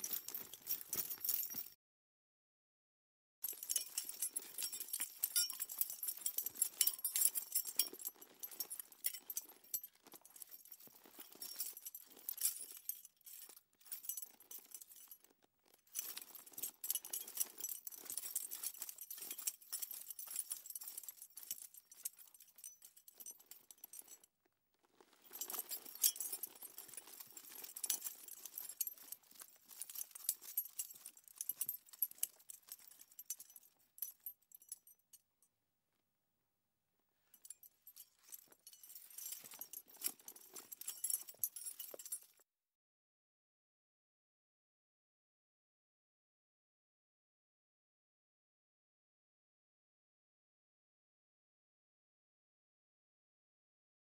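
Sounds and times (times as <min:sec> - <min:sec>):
horse bridles jingling: 0:00.0 - 0:01.8, 0:03.4 - 0:24.3, 0:25.0 - 0:35.1, 0:37.3 - 0:42.4.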